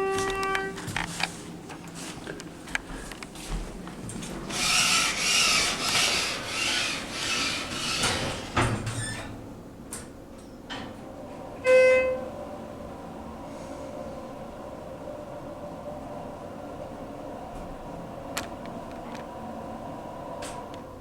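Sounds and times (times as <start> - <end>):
elevator chime: 0.0 - 0.8, 11.6 - 12.4.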